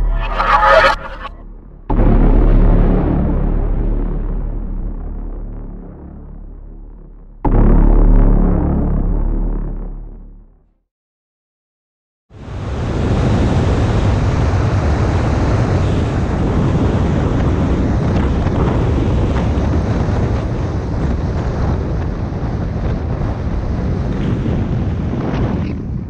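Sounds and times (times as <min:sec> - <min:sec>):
wind buffeting microphone: 0:12.8 - 0:26.0.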